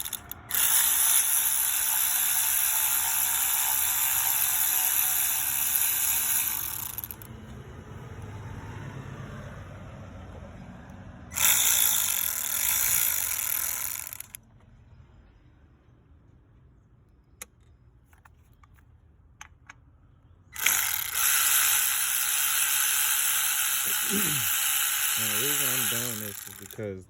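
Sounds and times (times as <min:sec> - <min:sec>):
ratchet wrench clicking: 0:00.0 - 0:07.3, 0:11.3 - 0:14.4, 0:20.6 - 0:26.9.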